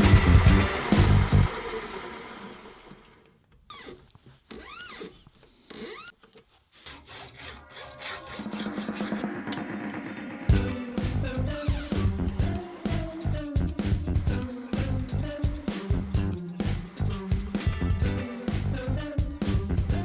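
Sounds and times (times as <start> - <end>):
background music: 0.0 - 1.5, 8.8 - 20.0
hand tool scraping strokes: 4.6 - 9.2.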